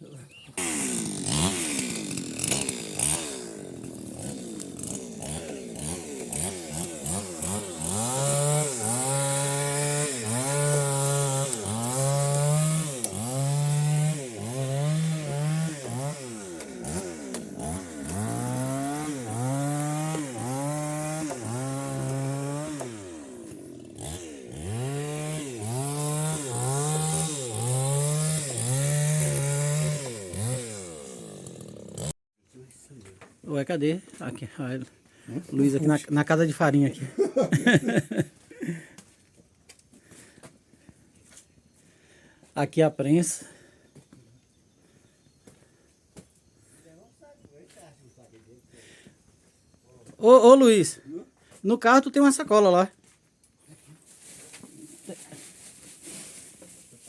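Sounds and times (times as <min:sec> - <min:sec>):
chainsaw engine revving: 0:00.6 - 0:32.2.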